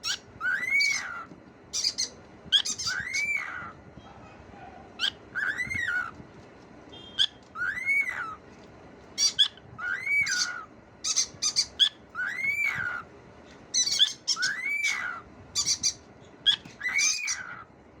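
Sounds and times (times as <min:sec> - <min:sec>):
cockatiel whistling: 0:00.0 - 0:03.7, 0:05.0 - 0:06.1, 0:07.0 - 0:08.4, 0:09.2 - 0:13.0, 0:13.8 - 0:17.6.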